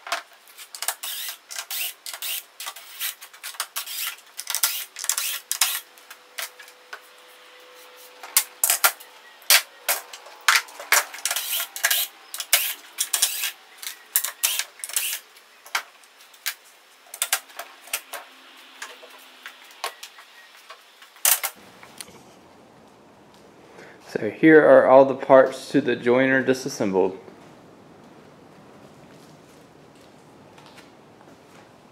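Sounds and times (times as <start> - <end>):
small hard parts clicking and clattering: 0.0 - 6.8, 8.2 - 21.6.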